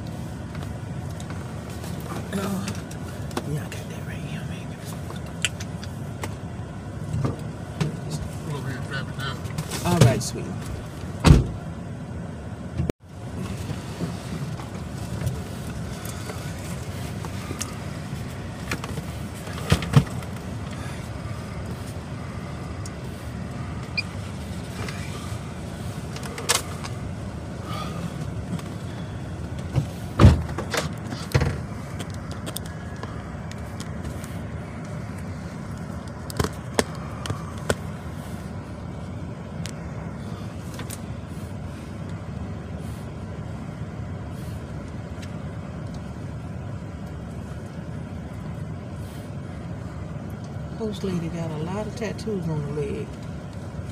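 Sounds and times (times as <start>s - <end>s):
truck engine and road rumble: 0.0s - 53.9s
short knocks and clunks: 11.2s - 11.6s, 29.6s - 31.7s.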